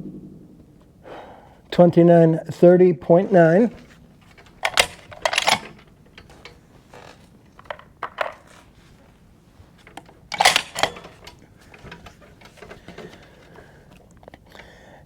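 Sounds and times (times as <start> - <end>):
rifle bolt clicking: 4.4 - 6.6, 9.9 - 13.2.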